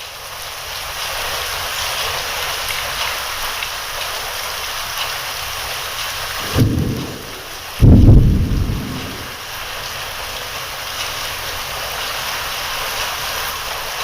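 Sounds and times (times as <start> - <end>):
steady rain falling: 0.0 - 14.0
thunder rumble: 6.4 - 9.7.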